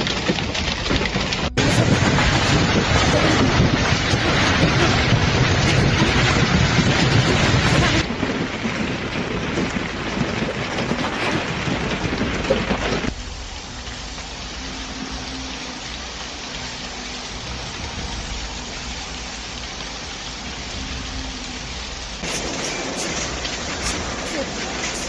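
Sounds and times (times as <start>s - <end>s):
heavy rain downpour: 0.0s - 25.0s.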